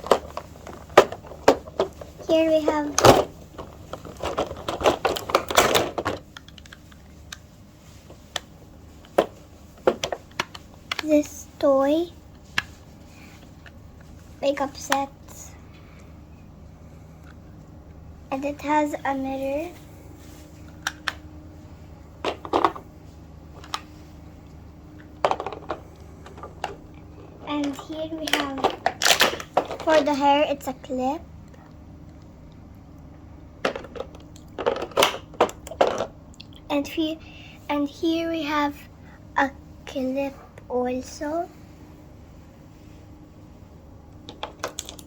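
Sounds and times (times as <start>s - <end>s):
plastic toy pieces clicking: 27.7s - 30.0s
packaging crinkling: 28.2s - 30.0s.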